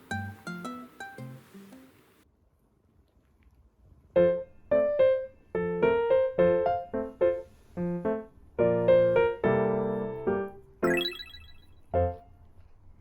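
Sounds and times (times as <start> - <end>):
light piano melody: 4.2 - 12.2.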